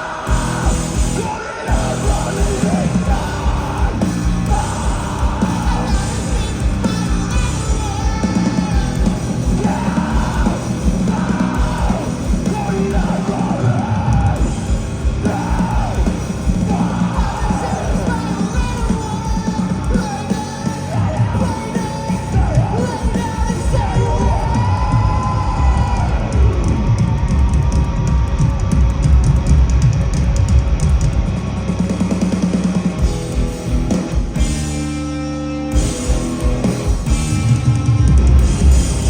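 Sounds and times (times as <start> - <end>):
drums: 0.0 - 39.0
loud guitars: 0.0 - 39.0
person yelling and singing: 0.3 - 14.4, 15.2 - 26.7.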